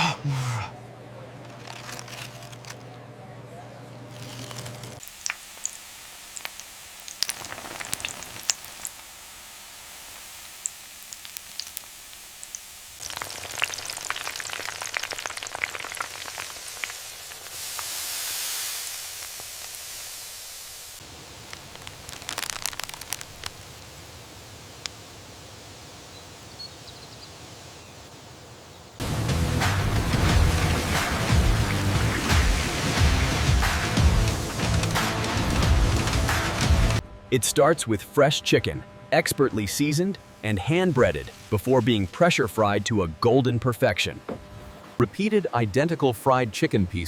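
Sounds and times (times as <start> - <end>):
oil sizzling and popping: 4.1 - 26.4, 29.0 - 37.0.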